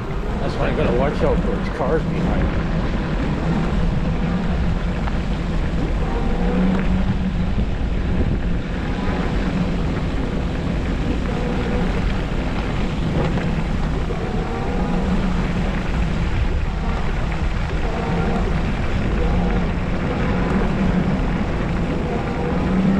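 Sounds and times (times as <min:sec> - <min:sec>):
faint wavering hum: 0:00.0 - 0:22.9
road rumble: 0:00.0 - 0:22.9
wind: 0:00.0 - 0:22.9.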